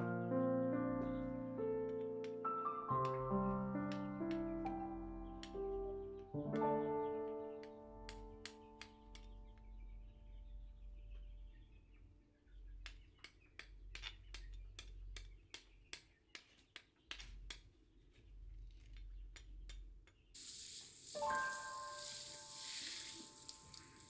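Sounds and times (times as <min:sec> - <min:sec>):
steady hiss: 0:20.4 - 0:24.0.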